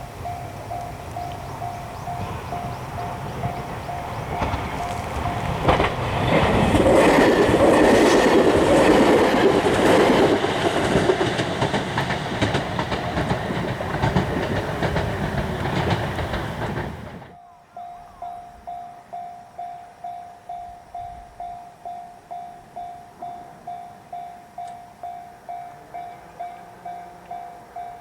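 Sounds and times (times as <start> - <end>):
level crossing warning bell: 0.0 - 14.9, 17.3 - 28.0
train wheels clattering: 0.0 - 17.4.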